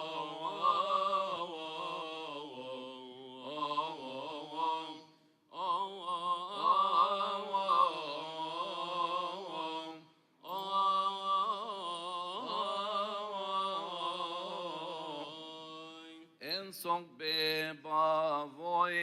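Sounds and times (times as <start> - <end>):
man chanting: 15.8 - 19.0.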